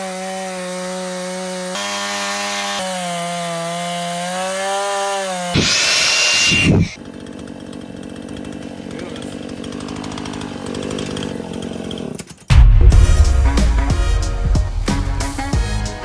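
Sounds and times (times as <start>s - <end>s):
chainsaw cutting wood: 0.0s - 12.5s.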